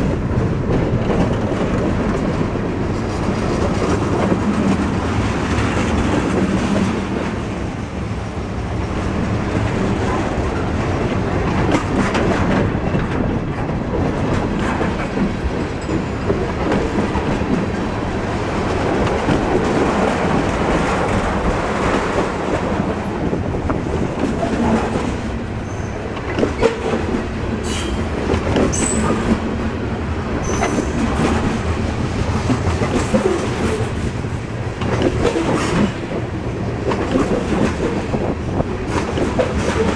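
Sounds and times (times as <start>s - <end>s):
train wheels clacking over rail joints: 11.4s - 29.7s, 30.4s - 39.9s.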